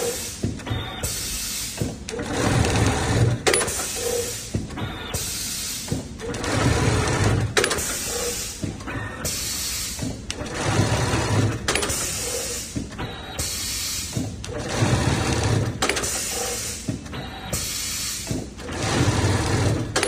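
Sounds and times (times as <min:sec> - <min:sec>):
sewing machine stitching: 0:02.1 - 0:04.4, 0:06.2 - 0:09.1, 0:10.4 - 0:13.3, 0:14.5 - 0:16.6, 0:18.6 - 0:20.0.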